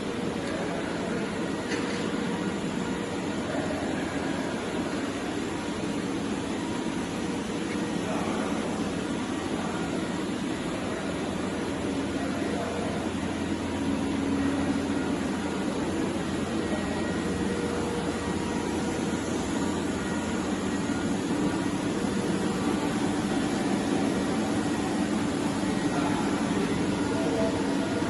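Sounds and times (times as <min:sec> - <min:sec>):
machine hum and whir: 0:00.0 - 0:28.0.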